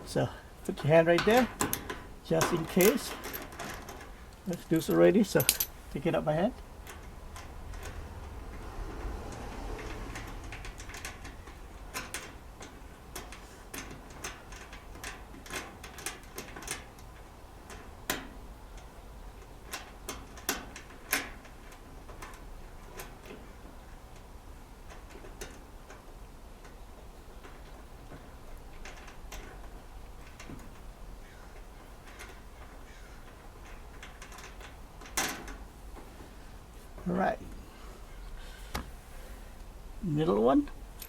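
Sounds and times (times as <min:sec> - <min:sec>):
metal screw handled: 0:00.7 - 0:05.9.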